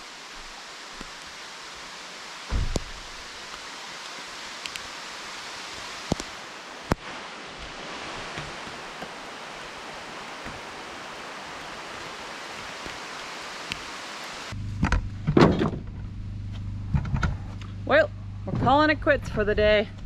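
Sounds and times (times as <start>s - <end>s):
rain falling: 0.0s - 14.6s
low thump: 2.5s - 3.0s.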